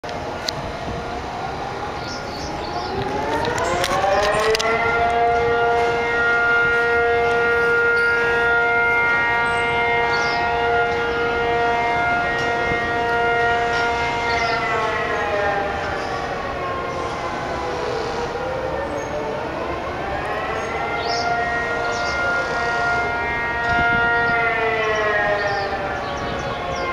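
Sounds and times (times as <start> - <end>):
air raid siren wailing: 0.0 - 26.9.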